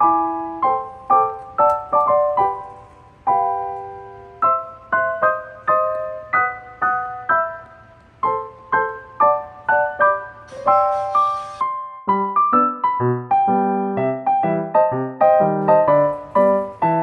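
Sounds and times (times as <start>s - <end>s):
gentle piano melody: 0.0s - 17.0s
brief high hiss: 10.5s - 11.7s.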